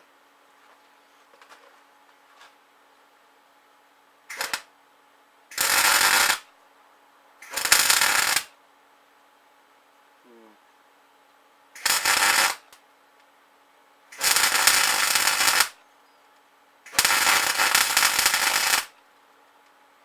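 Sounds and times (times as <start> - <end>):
welding arc crackling: 4.3 - 4.7, 5.5 - 6.5, 7.4 - 8.6, 11.8 - 12.8, 14.2 - 15.8, 16.9 - 19.0.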